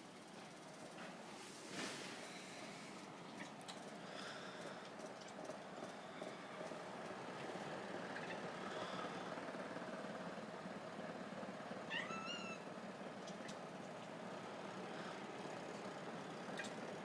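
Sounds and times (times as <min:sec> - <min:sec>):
cat meowing: 0:11.9 - 0:12.7.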